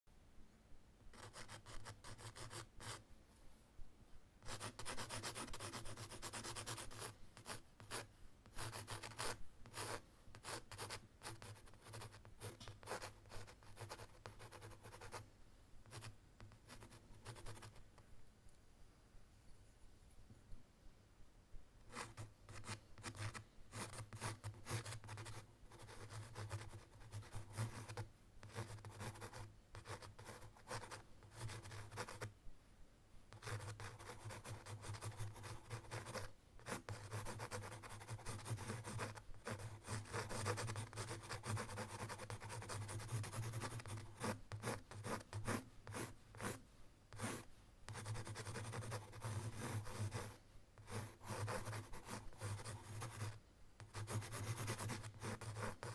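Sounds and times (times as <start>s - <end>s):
writing tool scratching surface: 21.9s - 32.3s, 33.4s - 55.9s.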